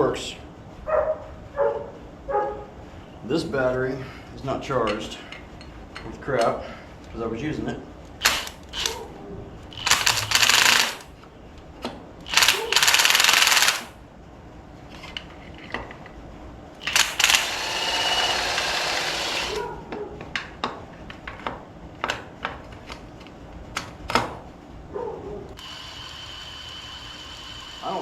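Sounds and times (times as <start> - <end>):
cordless drill spinning: 8.2 - 9.0, 9.7 - 11.1, 12.3 - 13.9, 16.8 - 19.6, 25.6 - 28.0.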